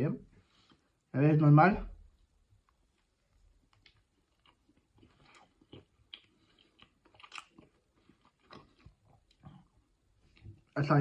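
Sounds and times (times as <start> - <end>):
chewing crispy fried chicken: 2.6 - 10.8.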